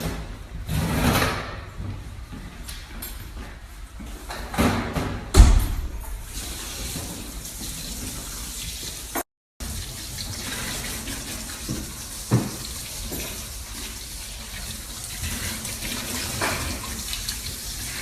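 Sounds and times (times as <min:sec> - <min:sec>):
loud knock: 0:05.3 - 0:06.3
tap water running: 0:06.1 - 0:18.0.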